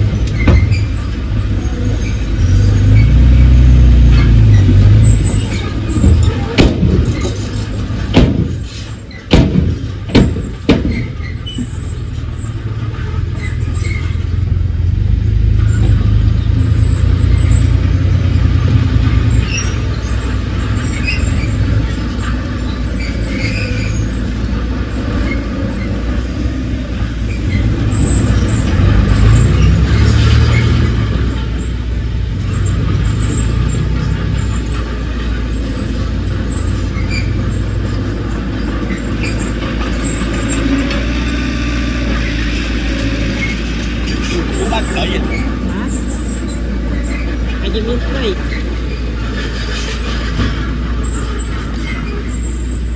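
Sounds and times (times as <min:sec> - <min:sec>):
heavy machinery diesel engine: 0:00.0 - 0:52.9
loud knocks: 0:05.9 - 0:11.8.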